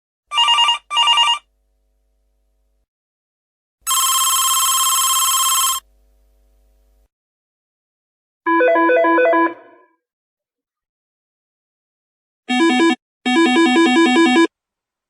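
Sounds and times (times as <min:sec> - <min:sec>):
telephone trilling ring: 0:00.3 - 0:01.5, 0:03.9 - 0:05.8.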